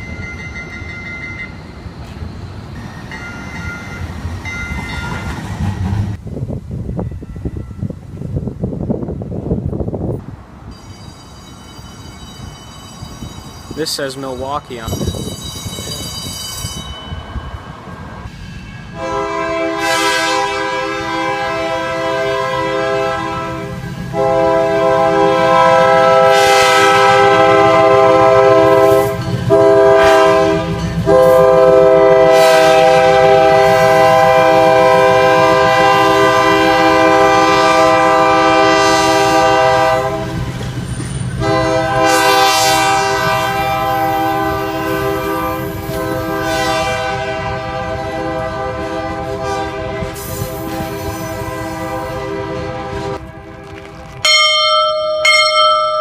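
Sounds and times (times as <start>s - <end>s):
low rumble of passing train: 0.0s - 56.0s
locomotive air horn blasts: 19.0s - 40.5s, 41.4s - 53.7s.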